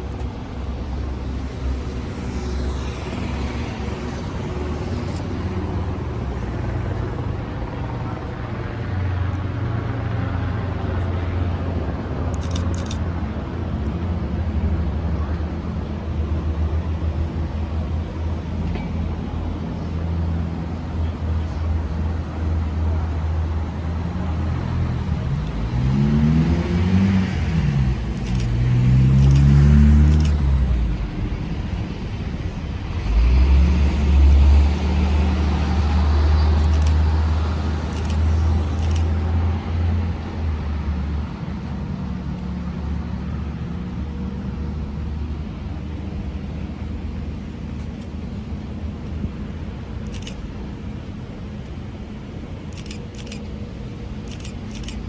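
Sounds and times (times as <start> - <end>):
vehicle engines passing: 0.0 - 55.0
light clicks: 37.9 - 39.1.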